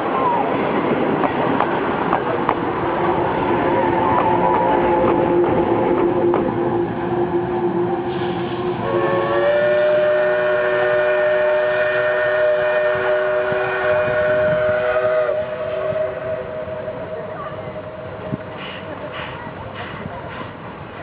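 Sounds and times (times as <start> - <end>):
train running noise: 0.0 - 21.0
steam locomotive whistle: 3.6 - 18.2.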